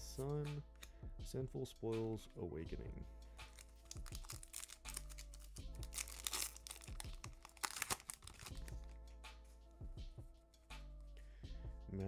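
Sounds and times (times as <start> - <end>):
soft background music: 0.0 - 12.0
foil wrapper crinkling and tearing: 3.5 - 8.9.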